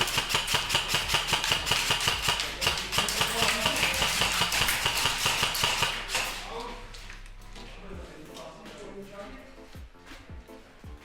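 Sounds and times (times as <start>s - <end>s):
airsoft rifle rapid fire: 0.0s - 6.6s.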